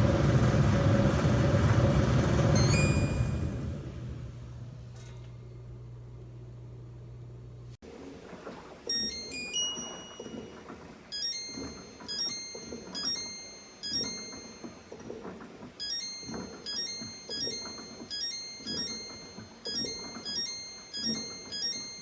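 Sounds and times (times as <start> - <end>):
light keyboard tune: 2.5 - 3.7, 8.9 - 22.0.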